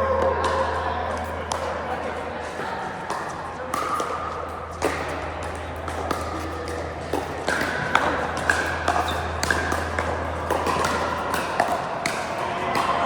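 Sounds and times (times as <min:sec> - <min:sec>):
steady low hum: 0:00.0 - 0:13.0
paddles striking plastic ball: 0:04.8 - 0:13.0.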